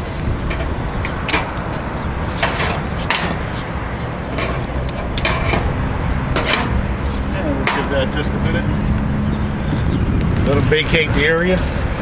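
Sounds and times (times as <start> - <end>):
steady low rumble: 0.0 - 12.0
sharp clicks and knocks: 0.4 - 1.8, 2.4 - 3.7, 4.3 - 7.9.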